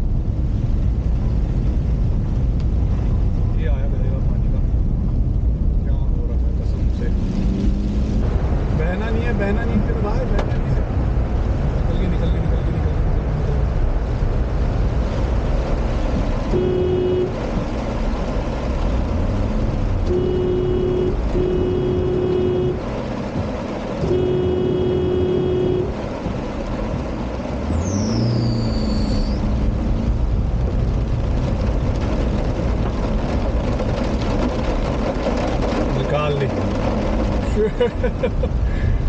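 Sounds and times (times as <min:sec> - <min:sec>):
car engine running: 0:00.0 - 0:39.0
rushing water and heavy rain: 0:00.0 - 0:39.0
vehicle horn honking: 0:16.5 - 0:17.4, 0:20.1 - 0:22.8, 0:24.0 - 0:25.9
high squeal: 0:27.7 - 0:29.5.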